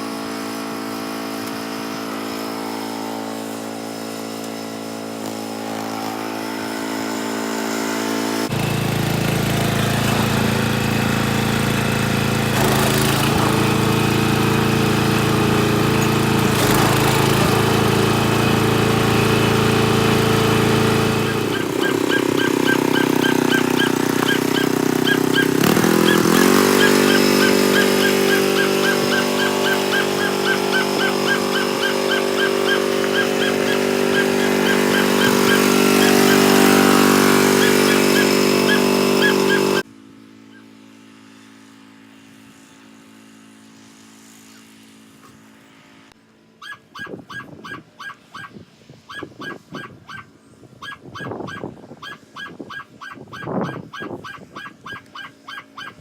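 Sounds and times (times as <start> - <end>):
riding lawn mower engine running: 0.0 - 46.6
quick high ticking: 21.3 - 39.8.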